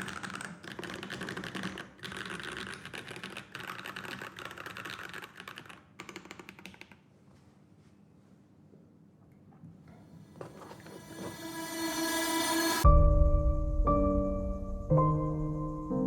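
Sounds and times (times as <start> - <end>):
fast typing on mechanical keyboard: 0.0 - 7.0.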